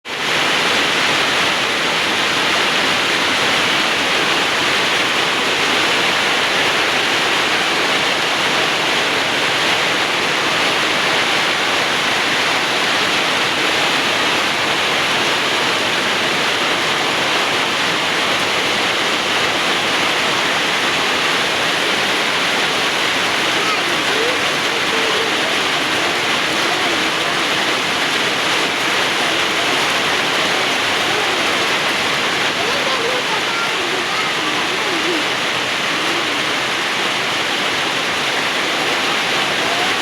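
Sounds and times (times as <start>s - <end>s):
heavy rain falling: 0.0s - 40.0s.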